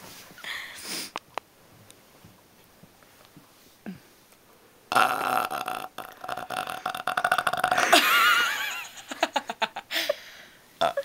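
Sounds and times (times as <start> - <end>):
girl burping: 10.8 - 11.0.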